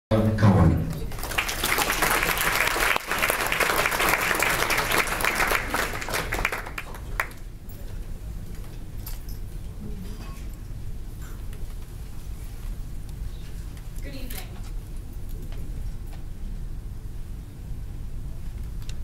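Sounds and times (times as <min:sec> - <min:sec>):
audience applauding: 0:01.0 - 0:07.5.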